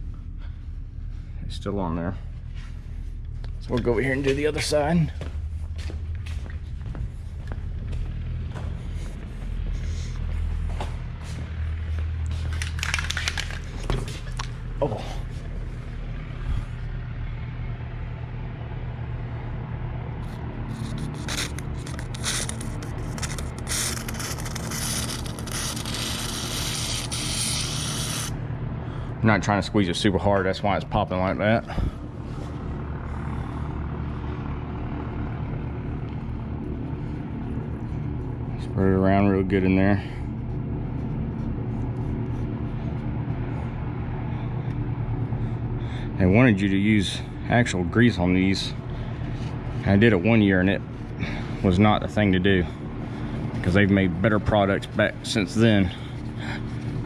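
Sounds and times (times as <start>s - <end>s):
steady low hum: 0.0s - 57.0s
aerosol can sputtering spray: 20.8s - 28.3s.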